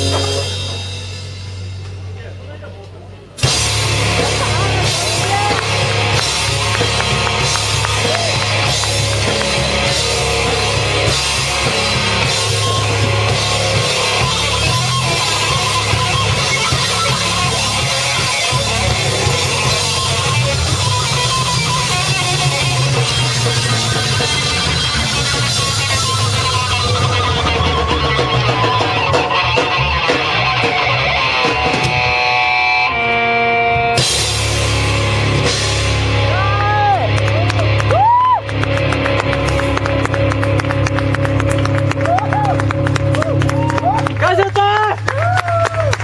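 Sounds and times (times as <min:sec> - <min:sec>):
electric guitar: 0:00.0 - 0:02.2, 0:03.3 - 0:46.0
drum kit: 0:00.0 - 0:46.0
rock band playing live: 0:00.0 - 0:46.0.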